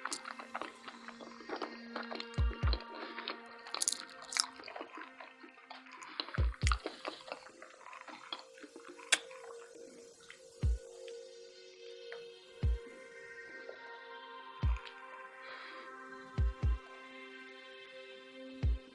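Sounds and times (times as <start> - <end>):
wet mouth clicks: 0.0 - 9.5
person chewing food: 0.0 - 9.6
soft background music: 0.0 - 18.9
deep bass beats: 2.4 - 2.8, 6.4 - 6.8, 10.6 - 10.8, 14.6 - 14.9, 16.4 - 16.8.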